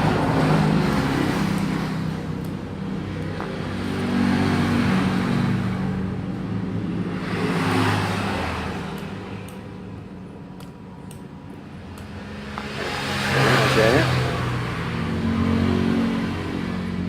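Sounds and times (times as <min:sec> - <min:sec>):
traffic passing by: 0:00.0 - 0:17.0.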